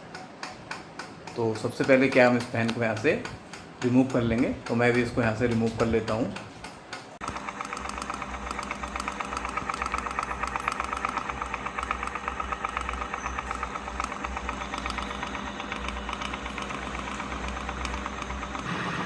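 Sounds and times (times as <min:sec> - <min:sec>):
ceiling fan motor hum: 0:00.0 - 0:19.0
rapid fine ticking: 0:07.2 - 0:18.8.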